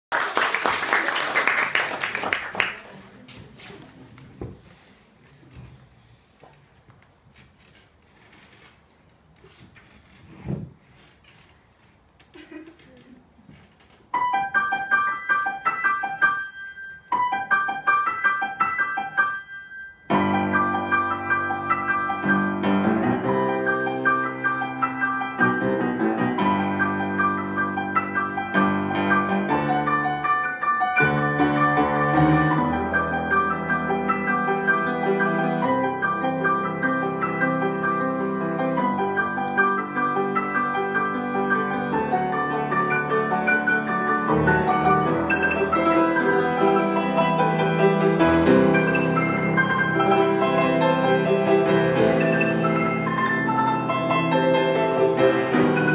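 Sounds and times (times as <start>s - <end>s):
piano duet: 12.4s - 55.9s.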